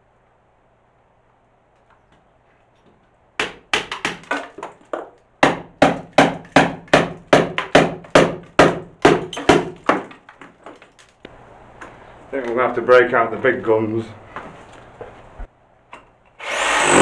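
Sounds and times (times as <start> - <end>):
hammer striking masonry: 3.4 - 10.9.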